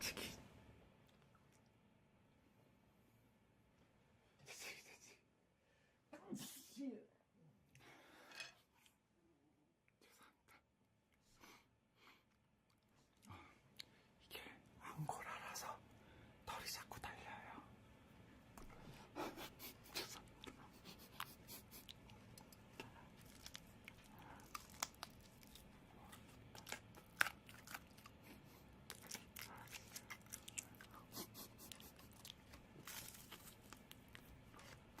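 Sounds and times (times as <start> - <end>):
small crackles and clicks: 21.9 - 27.9.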